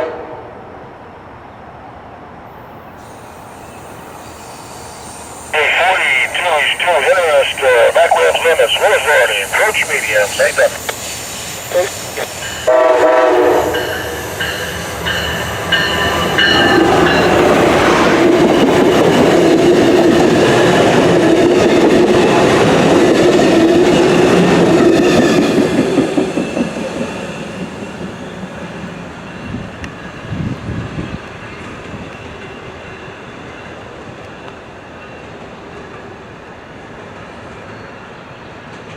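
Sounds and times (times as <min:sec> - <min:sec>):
train air horn: 0:00.0 - 0:00.5, 0:11.9 - 0:14.2.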